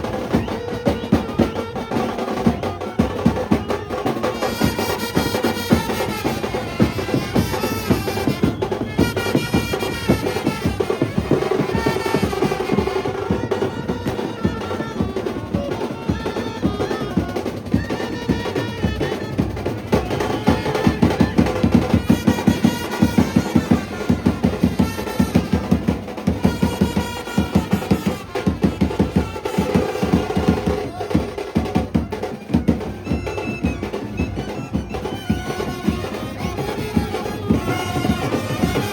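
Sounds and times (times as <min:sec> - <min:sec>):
fast dense drumming: 0:00.0 - 0:38.9
brass horns melody: 0:04.1 - 0:15.4, 0:18.3 - 0:30.9, 0:35.2 - 0:38.9.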